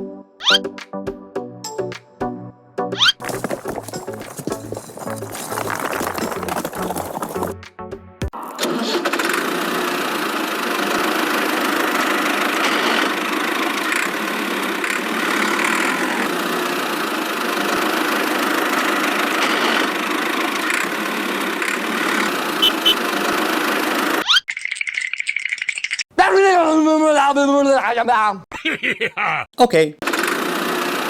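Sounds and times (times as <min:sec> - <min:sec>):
small engine running: 0:03.0 - 0:07.5, 0:08.6 - 0:24.2, 0:30.0 - 0:31.0.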